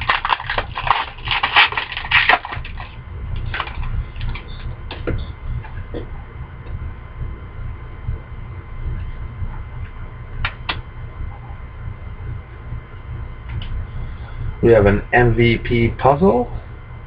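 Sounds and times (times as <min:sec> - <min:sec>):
wrapper crackling and crinkling: 0:00.0 - 0:04.5
steady low hum: 0:00.0 - 0:17.0.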